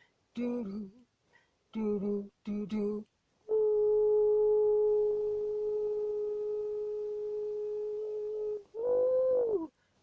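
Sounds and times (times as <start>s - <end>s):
woman singing a long note: 1.8s - 8.9s.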